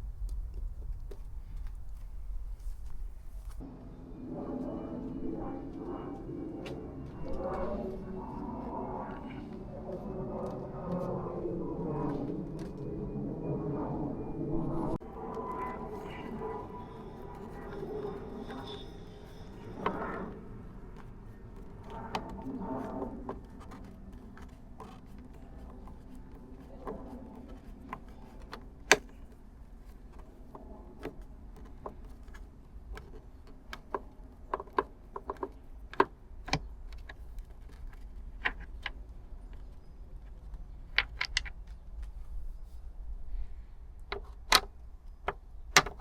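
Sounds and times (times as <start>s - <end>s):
low steady hum: 0.0s - 46.0s
clicks and knocks of hand work: 44.1s - 46.0s.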